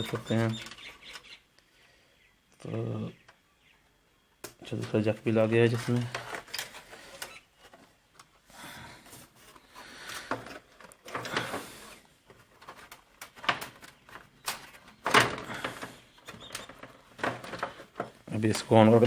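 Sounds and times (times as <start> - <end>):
hands handling plastic parts: 4.4 - 19.0.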